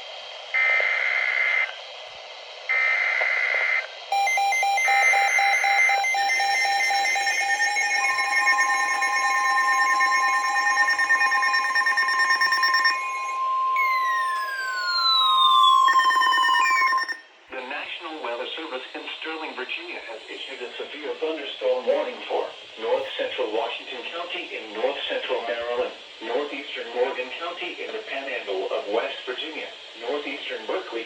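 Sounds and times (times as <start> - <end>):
steady warning alarm tone: 2.7 - 17.3, 18.3 - 20.8
overlapping alarm beeping tones: 4.1 - 17.2
siren-like falling tone: 4.1 - 17.2
digital header data bursts: 4.1 - 20.9.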